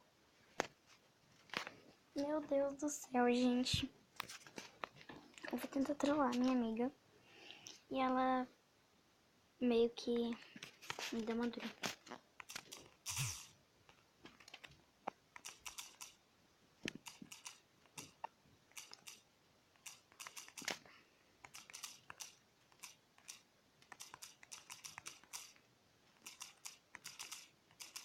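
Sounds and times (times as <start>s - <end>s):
fingers tapping phone touchscreen: 12.4s - 16.2s, 16.9s - 19.2s, 19.8s - 20.8s, 21.4s - 25.6s, 26.2s - 28.0s.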